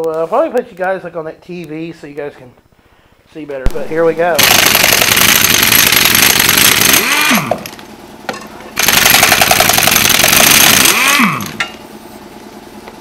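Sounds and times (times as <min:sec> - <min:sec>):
impact wrench rattling: 0:04.4 - 0:07.8, 0:08.8 - 0:11.8.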